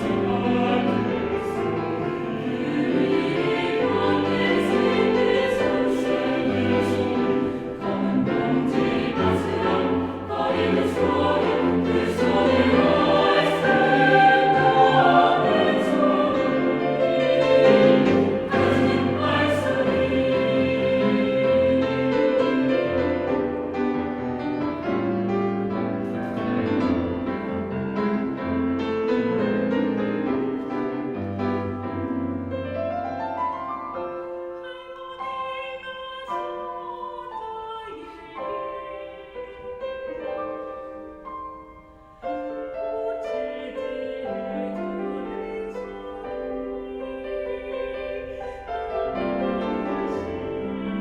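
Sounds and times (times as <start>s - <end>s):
choir singing bossa nova: 0.0s - 24.2s, 42.6s - 51.0s
piano accompaniment: 0.0s - 51.0s.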